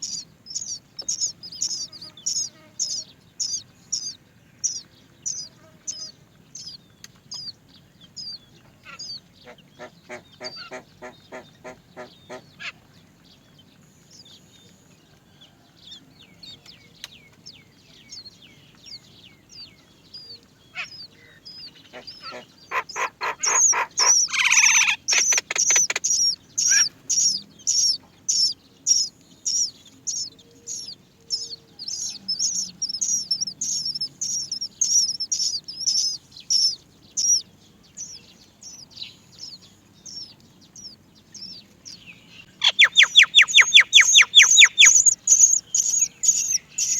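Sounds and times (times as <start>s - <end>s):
bird nestlings begging chirps: 0.0s - 12.7s, 18.1s - 46.9s
harsh loud bird call: 20.8s - 30.8s, 42.5s - 46.9s.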